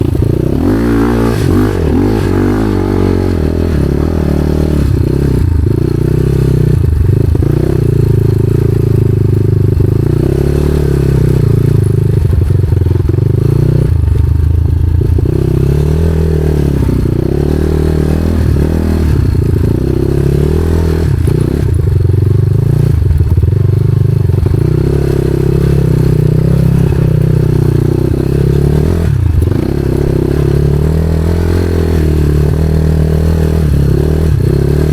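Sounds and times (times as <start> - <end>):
motorcycle engine under load: 0.0 - 34.9.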